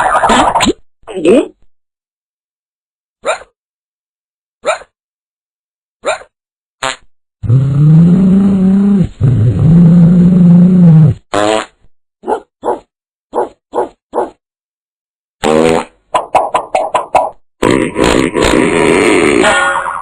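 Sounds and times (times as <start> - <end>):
cartoon fart sound effect: 0.0 - 0.8, 6.8 - 11.9, 15.4 - 20.0.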